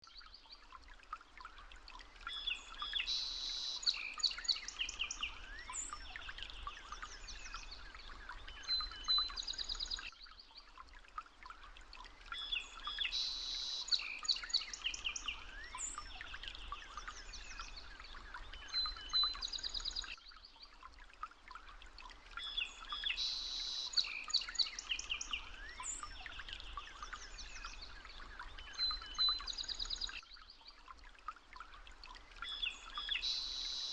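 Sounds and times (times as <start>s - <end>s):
small birds chirping and trilling: 2.2s - 10.8s, 12.3s - 20.8s, 22.3s - 30.8s, 32.4s - 33.9s.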